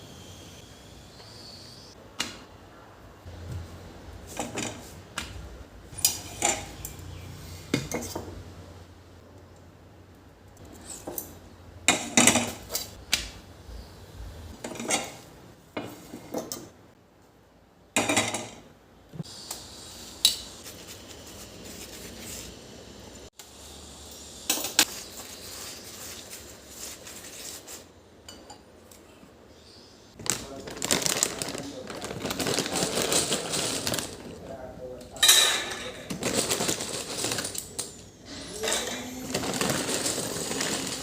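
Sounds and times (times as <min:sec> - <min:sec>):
quiet kitchen background: 0:00.0 - 0:41.0
dishes and utensils clattering: 0:14.6 - 0:16.7, 0:35.2 - 0:37.7.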